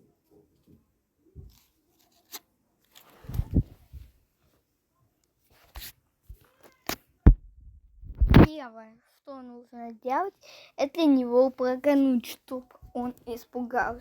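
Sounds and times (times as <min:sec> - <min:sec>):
deep thumps: 0:07.2 - 0:08.5.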